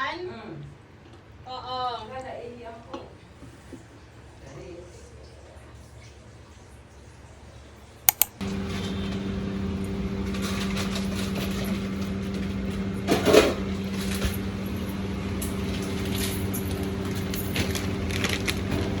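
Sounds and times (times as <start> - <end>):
sharp clicks: 8.1 - 8.4.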